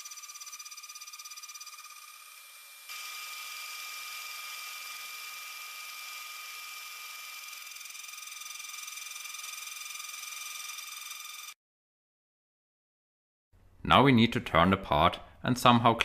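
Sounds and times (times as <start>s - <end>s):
end mill cutting aluminium: 0.0s - 11.5s
router spindle whining: 0.0s - 11.6s.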